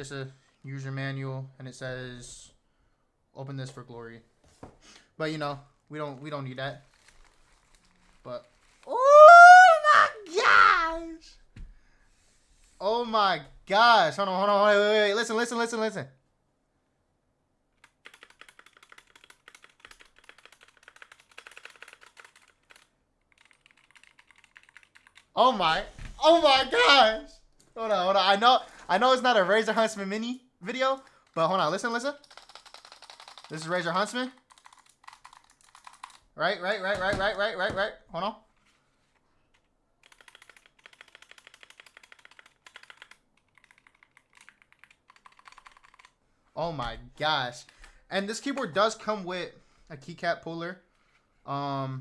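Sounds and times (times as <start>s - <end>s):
rapid keyboard typing: 17.8s - 27.1s, 30.9s - 37.8s, 40.0s - 46.2s.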